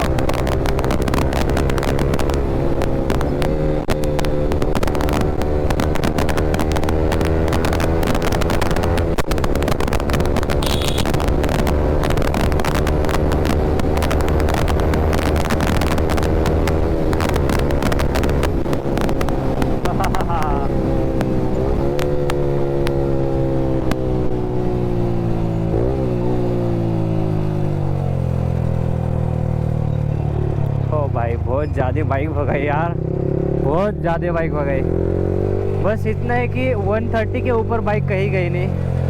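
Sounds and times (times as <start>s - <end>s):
wind rushing on microphone: 0.0s - 27.9s
motorcycle engine at high revs: 0.0s - 39.0s.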